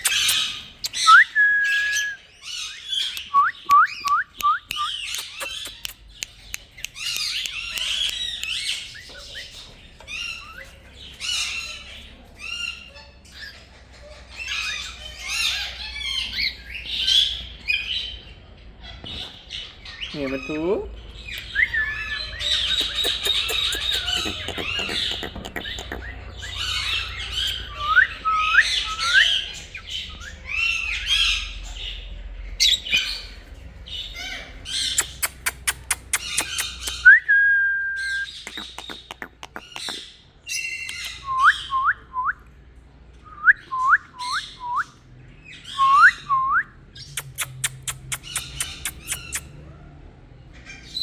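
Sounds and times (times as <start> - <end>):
parrot clicking: 0.0 - 1.1, 3.1 - 8.8, 22.7 - 26.1, 35.0 - 37.1, 38.4 - 40.0, 47.2 - 49.4
parrot whistling: 0.0 - 2.3, 22.7 - 26.1, 34.9 - 40.0, 47.2 - 49.4
parrot squawking: 0.0 - 3.3, 3.9 - 17.4, 21.9 - 31.8, 34.0 - 37.1, 38.1 - 41.3, 47.0 - 49.5.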